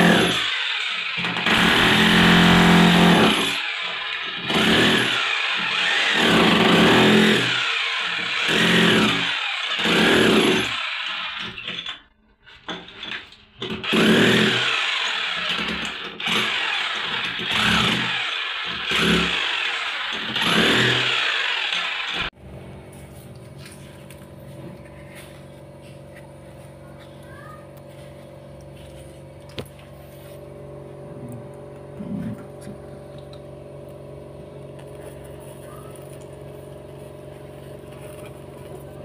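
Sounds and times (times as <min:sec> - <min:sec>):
power tool whining in bursts: 0:00.0 - 0:12.0, 0:13.7 - 0:22.4.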